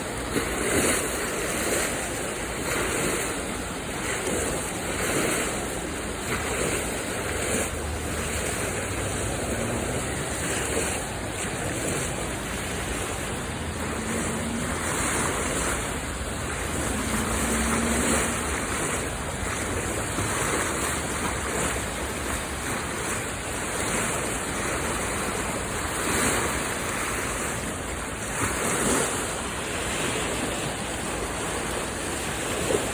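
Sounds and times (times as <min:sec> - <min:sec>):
rushing floodwater: 0:00.0 - 0:32.9.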